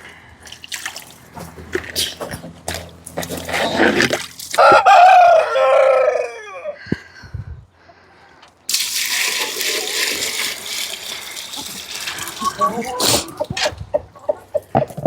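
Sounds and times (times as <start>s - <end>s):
rooster crowing: 4.6s - 6.9s
water running: 8.7s - 13.6s.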